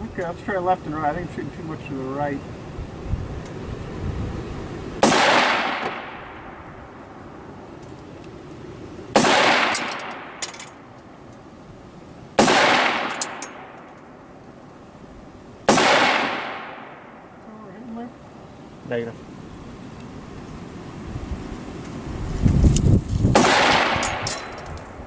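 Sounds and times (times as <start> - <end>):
rifle shots with ringing tail: 5.0 - 6.6, 9.1 - 10.9, 12.4 - 14.2, 15.6 - 17.3, 23.3 - 24.6.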